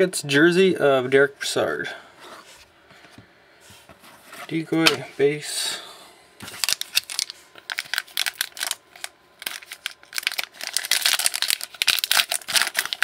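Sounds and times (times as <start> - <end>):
pack wrapper rustling: 6.4 - 13.0.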